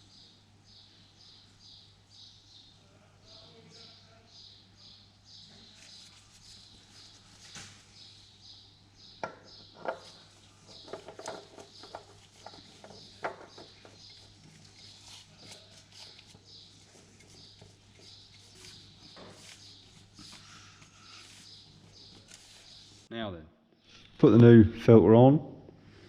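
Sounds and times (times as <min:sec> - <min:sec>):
hand tools clicking and knocking: 0:09.2 - 0:14.2.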